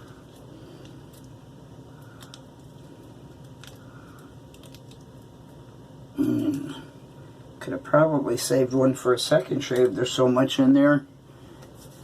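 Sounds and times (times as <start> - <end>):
low room tone hum: 0.0 - 12.0
handling clicks and crinkles: 2.0 - 5.7.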